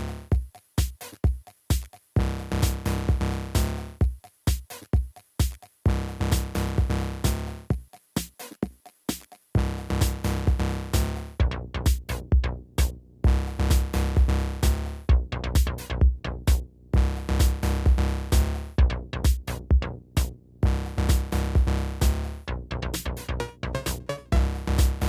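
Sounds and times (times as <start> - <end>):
heavy bass: 0.0 - 0.3, 2.2 - 4.0, 5.9 - 7.7, 9.6 - 25.0
drum machine beat: 0.0 - 25.0
synth chords: 20.6 - 25.0.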